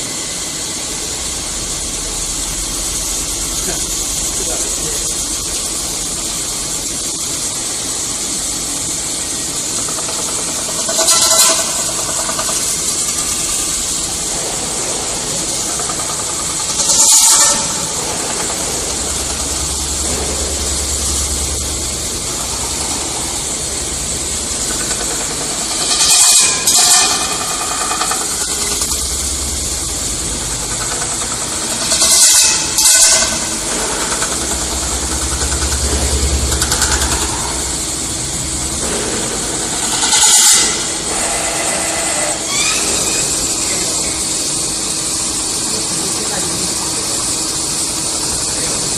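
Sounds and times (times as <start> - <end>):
loud hissing surges: 0.0 - 48.9
metal spinning machine hissing: 0.0 - 48.9
low hum: 0.2 - 8.8, 13.0 - 26.1, 26.7 - 41.3.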